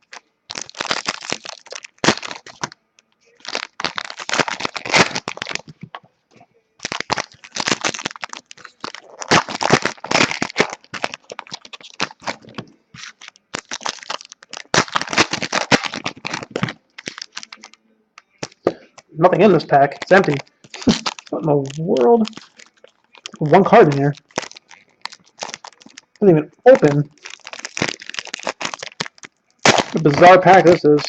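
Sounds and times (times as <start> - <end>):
wrapper crinkling and tearing: 0.0 - 6.0, 6.8 - 31.0.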